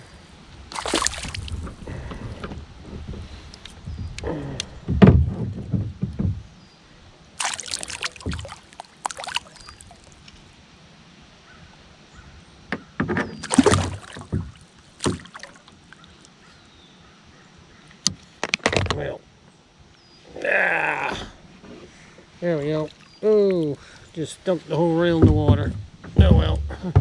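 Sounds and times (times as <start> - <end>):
water splashing: 0.7 - 2.1, 7.4 - 10.4, 13.4 - 16.3
knocking in a kayak: 0.8 - 3.3, 7.4 - 10.1, 13.0 - 15.6, 25.1 - 27.0
heavy bump: 25.1 - 27.0.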